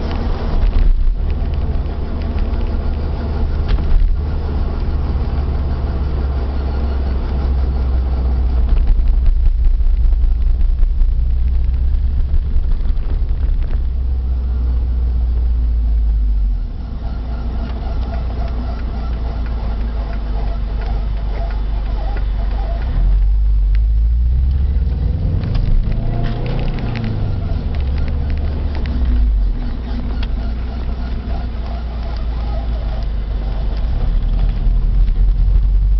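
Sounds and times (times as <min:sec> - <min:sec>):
car road and drivetrain rumble: 0:00.0 - 0:35.9
wheel bearing hum: 0:00.0 - 0:35.9.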